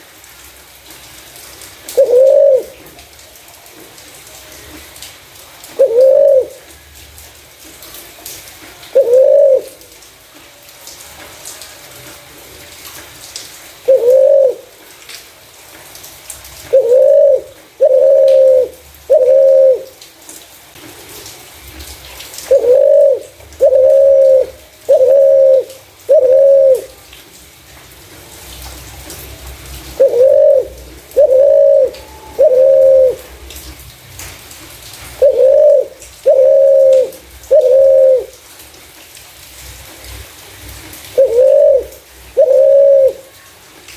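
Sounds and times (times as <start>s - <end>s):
dove cooing: 1.9s - 3.0s, 5.8s - 6.7s, 8.9s - 9.8s, 13.8s - 14.8s, 16.7s - 20.0s, 22.4s - 27.0s, 29.9s - 33.4s, 35.2s - 38.4s, 41.2s - 43.4s.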